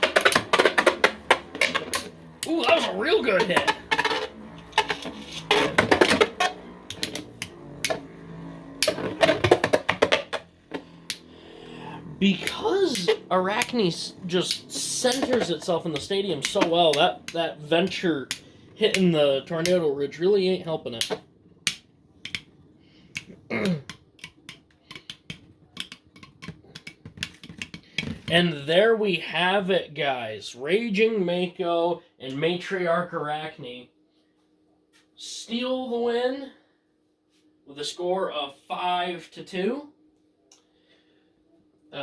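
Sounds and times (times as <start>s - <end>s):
spinning hum: 0.0s - 28.5s.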